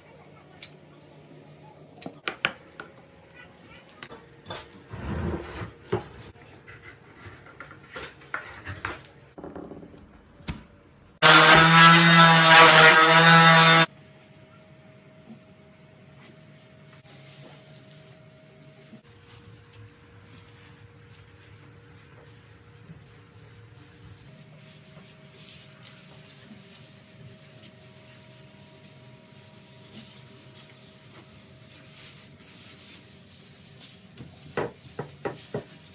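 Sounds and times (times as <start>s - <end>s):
rubbing strokes on wood: 20.3s - 35.9s.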